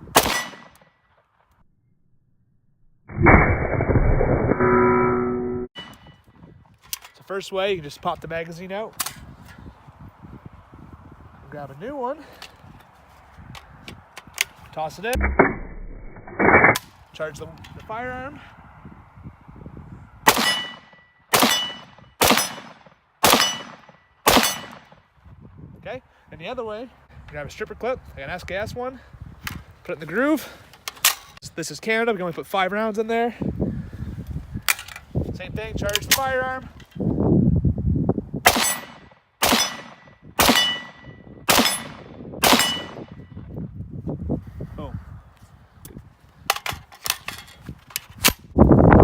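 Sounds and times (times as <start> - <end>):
rifle shots with ringing tail: 0.1 - 0.8, 20.3 - 24.9, 38.5 - 43.1.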